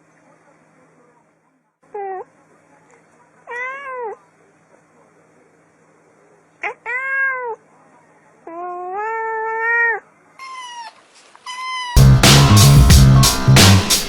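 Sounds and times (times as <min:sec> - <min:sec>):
cats meowing: 0:03.5 - 0:04.2, 0:06.6 - 0:07.6, 0:08.4 - 0:12.1
loud music with steady beat: 0:12.0 - 0:14.0.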